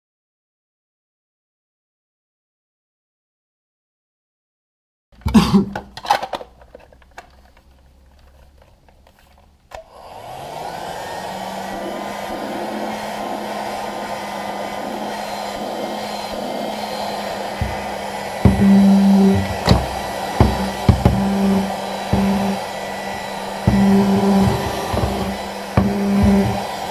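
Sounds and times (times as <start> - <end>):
small vacuum cleaner motor running: 9.8 - 26.9
vacuum cleaner clicks: 15.2 - 26.9
loud knocks: 17.6 - 22.6, 23.6 - 26.9.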